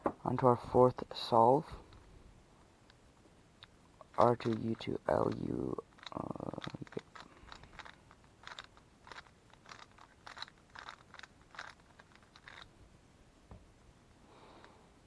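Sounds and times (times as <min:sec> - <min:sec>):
puzzle cube clicking turns: 0:03.6 - 0:12.7.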